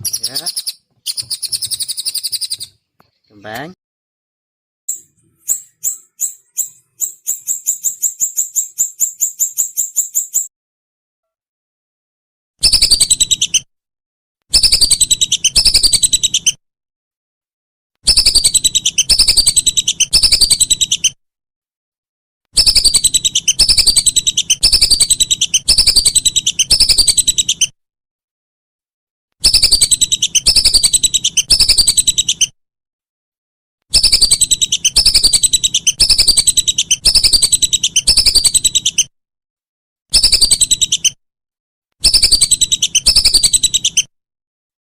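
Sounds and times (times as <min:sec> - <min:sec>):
songbird trill: 0:00.0 - 0:03.6, 0:04.9 - 0:10.5, 0:34.0 - 0:39.0.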